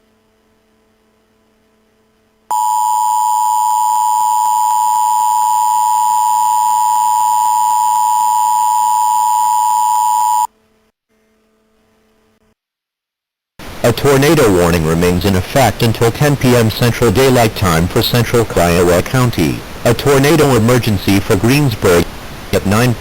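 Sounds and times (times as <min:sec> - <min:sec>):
two-tone alert signal: 0:02.5 - 0:10.5.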